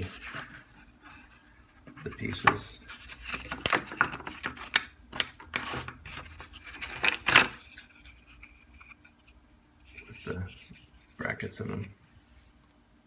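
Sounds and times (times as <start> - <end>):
hardboard scraping: 0.0 - 9.0
hardboard pieces clicking: 3.3 - 7.6.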